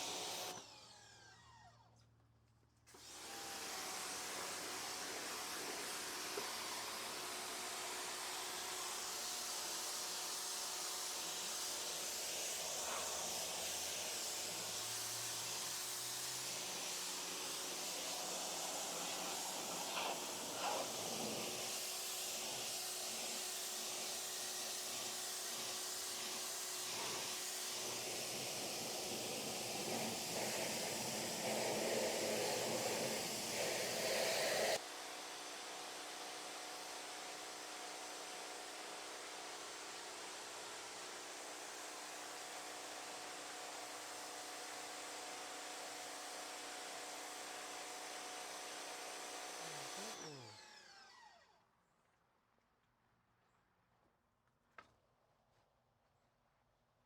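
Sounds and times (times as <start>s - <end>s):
pressure washer spraying water: 0.0s - 0.5s, 16.6s - 24.3s, 24.9s - 34.8s.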